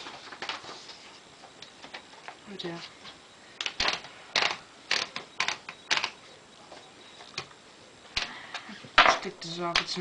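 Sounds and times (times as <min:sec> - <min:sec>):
typewriter clattering: 0:03.6 - 0:06.2.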